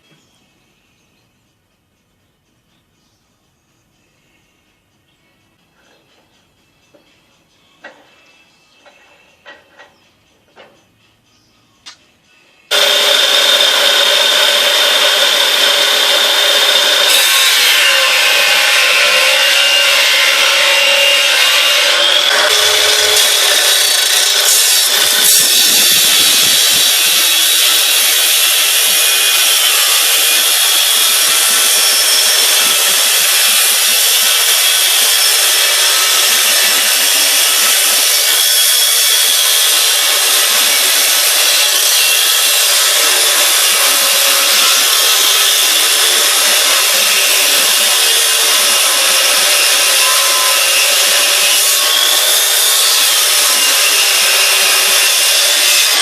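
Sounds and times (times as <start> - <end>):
angle grinder cutting sheet material: 12.7 - 56.0.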